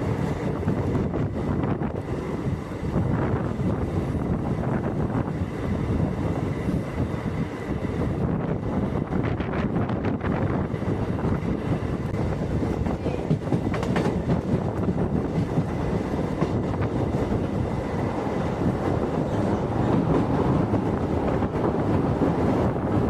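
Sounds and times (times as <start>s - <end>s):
train wheels rumbling on rails: 0.0s - 23.0s
clacks over rail joints: 12.0s - 17.7s.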